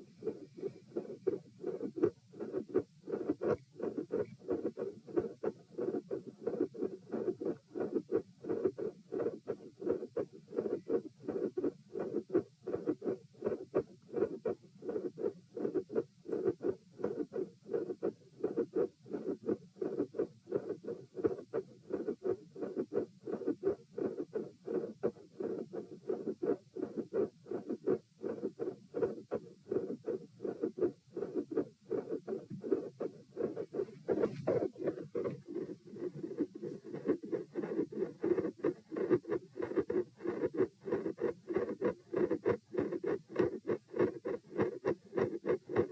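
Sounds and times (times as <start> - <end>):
fast heartbeat through stethoscope: 0.0 - 45.9
brief rubbing noise: 32.2 - 43.6.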